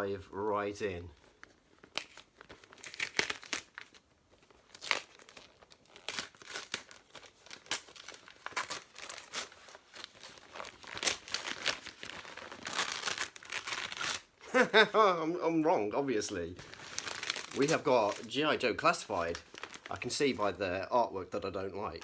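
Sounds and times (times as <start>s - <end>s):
wrapping paper tearing and crumpling: 1.3s - 14.4s, 16.6s - 20.6s.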